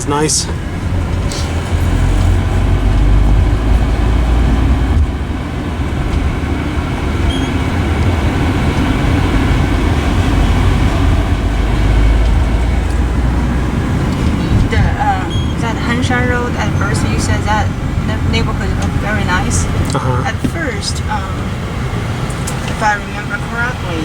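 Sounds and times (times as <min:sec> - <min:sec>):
moving vehicle rumble: 0:00.0 - 0:24.0
road and traffic noise: 0:00.0 - 0:24.0.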